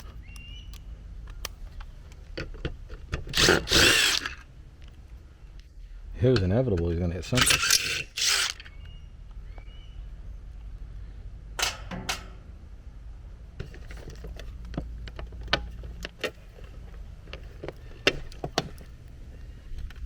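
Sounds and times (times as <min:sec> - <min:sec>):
low steady hum: 0:00.0 - 0:20.0
hand tools clicking and knocking: 0:06.4 - 0:08.7.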